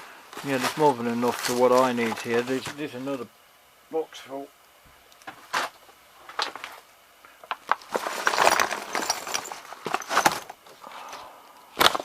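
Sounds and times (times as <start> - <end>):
connectors rattling in a box: 7.6 - 10.6.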